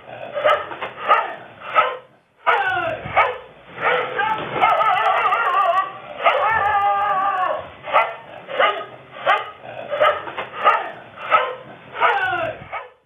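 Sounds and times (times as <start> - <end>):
dog barking: 0.4 - 6.6, 7.9 - 13.0
dog whining: 2.5 - 13.0.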